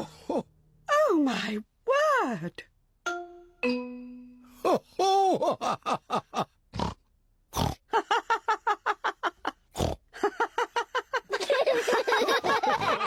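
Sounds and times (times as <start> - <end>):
loud pig snorts: 6.8 - 7.8, 9.8 - 10.0
cartoon pigs laughing: 10.2 - 13.0.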